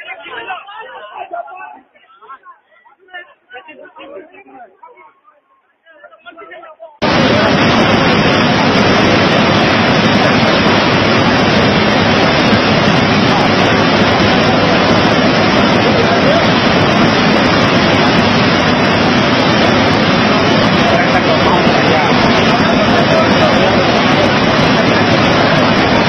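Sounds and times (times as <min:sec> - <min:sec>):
floodwater rushing: 0:07.0 - 0:26.0.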